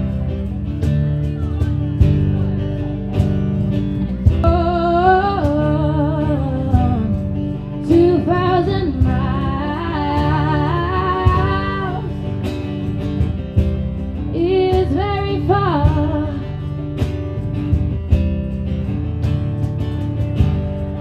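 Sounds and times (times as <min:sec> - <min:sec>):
steady drum beat: 0:00.0 - 0:05.8, 0:06.7 - 0:15.2, 0:15.8 - 0:21.0
guitar: 0:00.0 - 0:21.0
woman singing: 0:04.3 - 0:12.4, 0:14.2 - 0:16.8.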